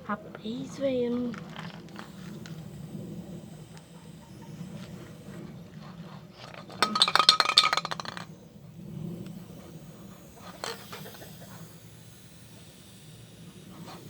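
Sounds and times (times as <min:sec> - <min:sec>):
spray can ball rattling: 0:00.4 - 0:02.9, 0:06.4 - 0:14.0.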